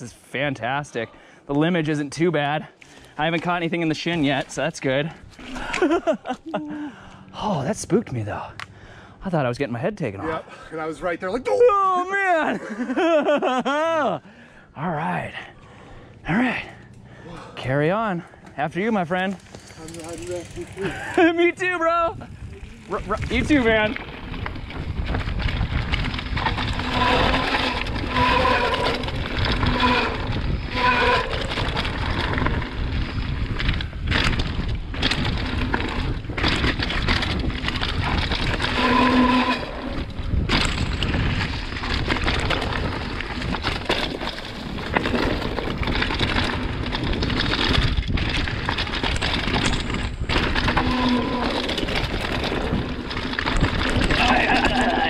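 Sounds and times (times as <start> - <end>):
wind rush on microphone: 22.1 - 55.0
bike knocks and rattles: 23.0 - 55.0.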